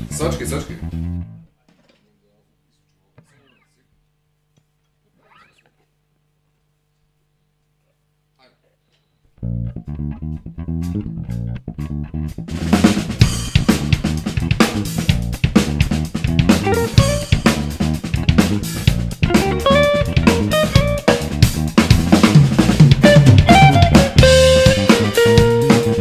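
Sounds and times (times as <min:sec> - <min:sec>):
electric bass: 0:00.0 - 0:01.5, 0:09.4 - 0:26.0
electric guitar: 0:09.4 - 0:26.0
drum kit beat: 0:12.3 - 0:26.0.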